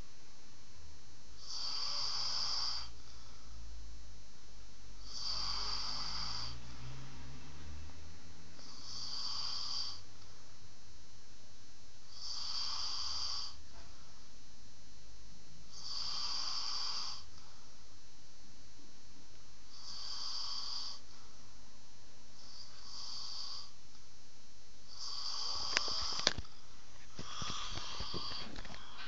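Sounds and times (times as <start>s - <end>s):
person snoring: 1.4s - 3.3s, 5.0s - 7.4s, 8.6s - 10.1s, 12.1s - 13.6s, 15.7s - 17.3s, 19.7s - 21.1s, 22.4s - 23.8s, 24.9s - 26.5s, 27.1s - 29.0s.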